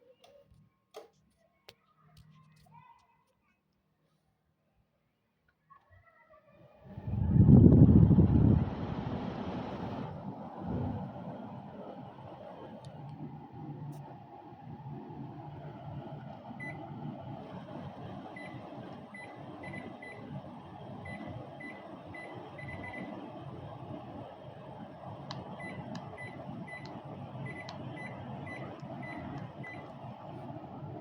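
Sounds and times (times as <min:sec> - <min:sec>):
steady low rumble: 0:06.9 - 0:11.8
air conditioner high beeps: 0:16.6 - 0:17.0, 0:18.3 - 0:20.4, 0:21.0 - 0:23.3, 0:25.3 - 0:30.0.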